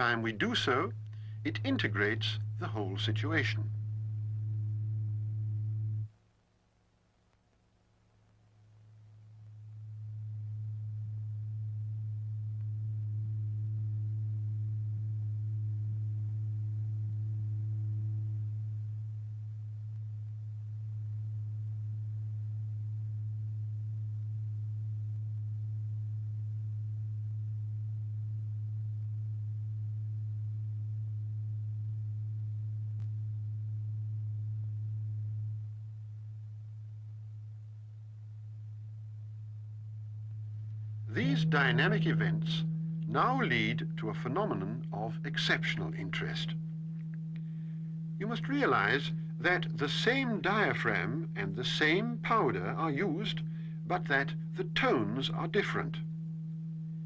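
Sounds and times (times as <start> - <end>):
low sine tone: 0.0 - 57.0.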